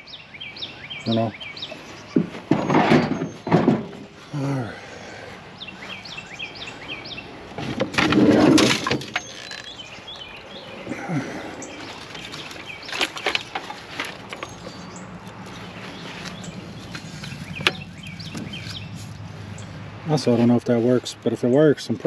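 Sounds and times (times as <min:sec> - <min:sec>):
small birds chirping: 0:00.0 - 0:22.0
rustling clatter of rummaging: 0:01.9 - 0:04.2, 0:07.5 - 0:10.6, 0:11.6 - 0:19.2.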